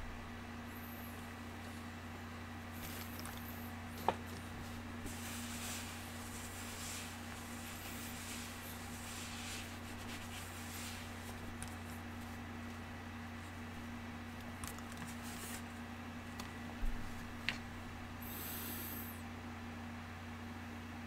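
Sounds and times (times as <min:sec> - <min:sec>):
low electrical hum: 0:00.0 - 0:21.0
hiss: 0:18.2 - 0:19.2.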